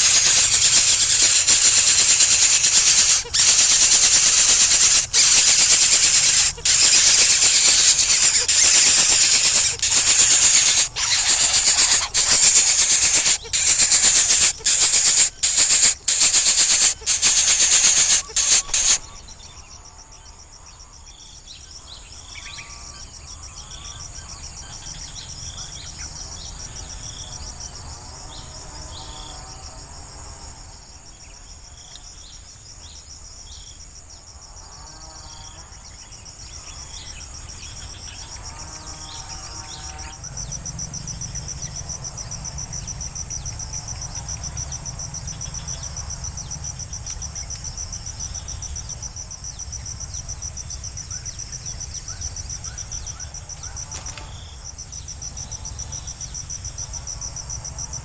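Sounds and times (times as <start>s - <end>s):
insect trilling: 0.0s - 19.8s, 21.8s - 30.6s, 34.5s - 58.0s
faint bird chirps: 0.0s - 30.5s, 35.3s - 58.0s.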